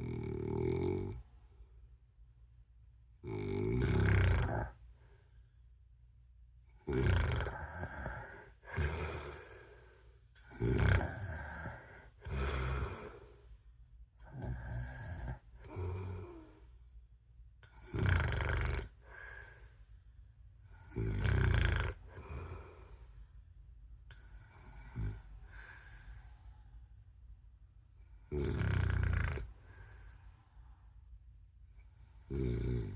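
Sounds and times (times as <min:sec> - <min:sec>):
person snoring: 0:00.0 - 0:01.3, 0:03.2 - 0:04.8, 0:06.8 - 0:13.4, 0:14.2 - 0:16.7, 0:17.6 - 0:19.7, 0:20.7 - 0:23.0, 0:24.3 - 0:26.2, 0:28.2 - 0:30.0, 0:32.1 - 0:32.9.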